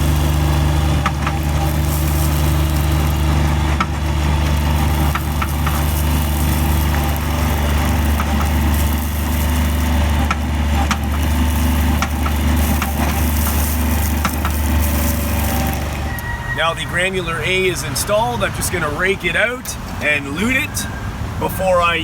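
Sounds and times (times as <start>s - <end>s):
gravel clicking and clattering: 0.0s - 16.0s
skid steer engine running: 0.0s - 21.6s.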